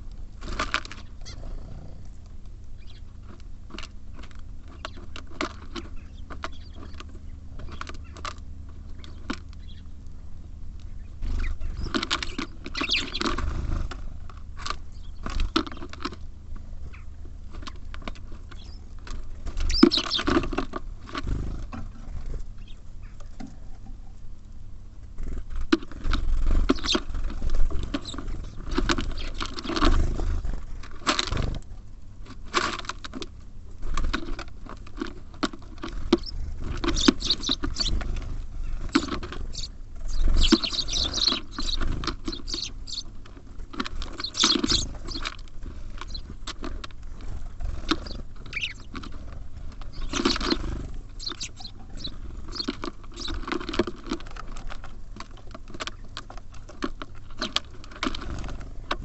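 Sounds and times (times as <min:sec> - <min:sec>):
birds pecking on wood: 0:00.0 - 0:59.0
seed rustling: 0:11.2 - 0:22.7, 0:25.3 - 0:59.0.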